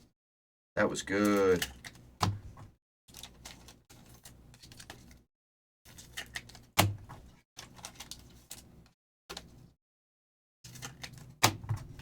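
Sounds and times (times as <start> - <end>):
trading cards clicking and rustling: 1.1 - 2.4, 5.9 - 9.6, 10.7 - 12.0.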